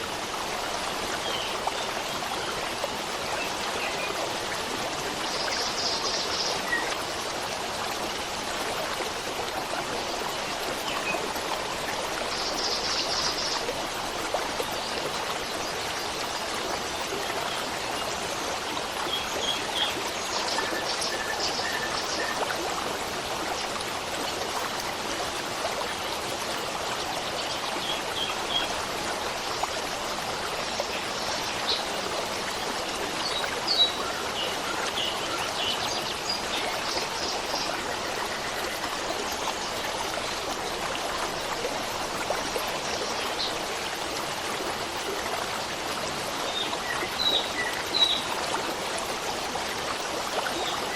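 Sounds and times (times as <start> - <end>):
stream running water: 0.0 - 50.9.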